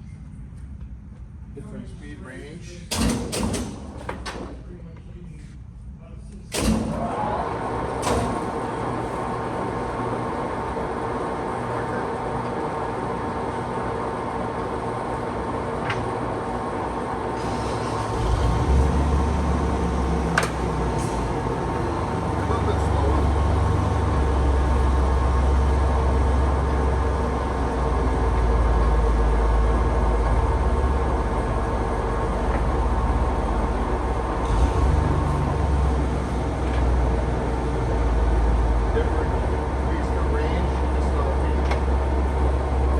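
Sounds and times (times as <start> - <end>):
lathe humming and whining: 4.5 - 42.9.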